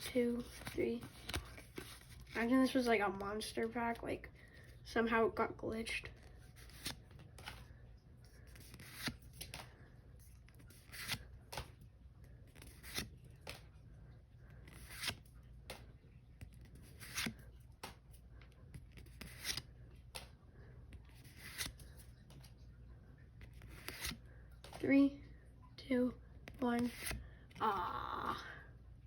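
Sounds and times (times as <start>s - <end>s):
low steady hum: 0.0s - 29.0s
trading cards flicked swishing: 21.2s - 22.5s.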